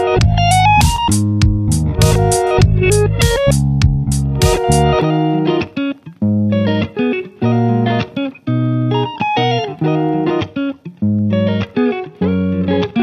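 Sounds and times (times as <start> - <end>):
plucked guitar music: 0.0 - 13.0.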